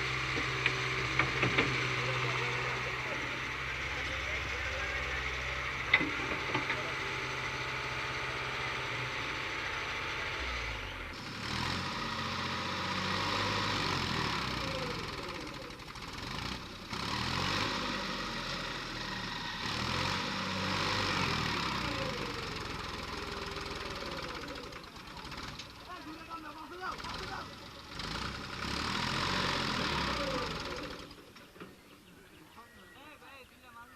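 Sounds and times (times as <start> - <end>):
diesel engine revving: 0.0 - 32.6.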